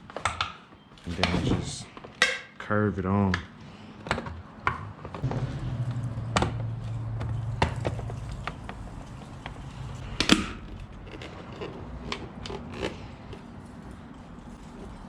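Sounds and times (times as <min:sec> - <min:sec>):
low hum: 0:05.2 - 0:15.0.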